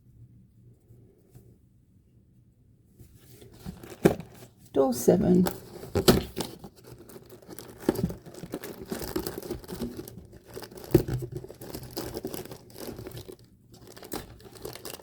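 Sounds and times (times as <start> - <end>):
packaging clicks: 5.4 - 15.0
packaging torn and crinkled: 5.4 - 15.0.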